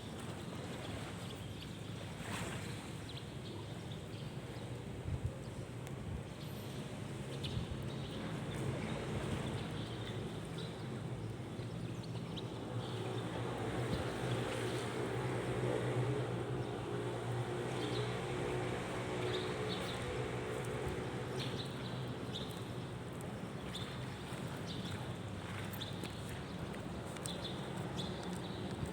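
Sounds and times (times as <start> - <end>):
boat motor humming: 8.4 - 28.9.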